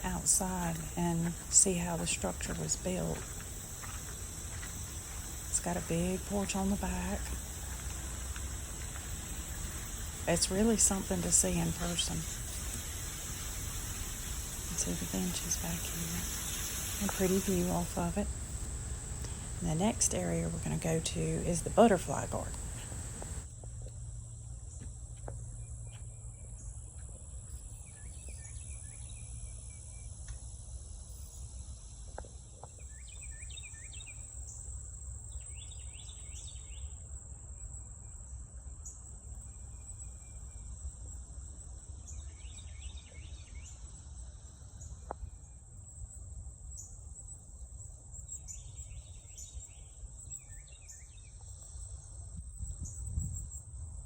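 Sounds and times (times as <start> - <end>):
birds chirping: 0.0 - 23.4
higher insect trill: 0.0 - 23.5
insects trilling: 0.0 - 23.5
low rumble: 11.1 - 23.4.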